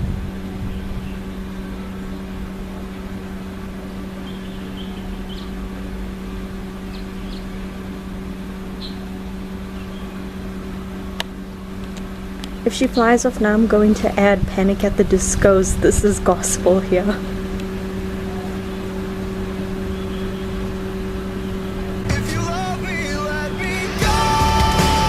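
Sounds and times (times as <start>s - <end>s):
machine humming: 0.0s - 25.0s.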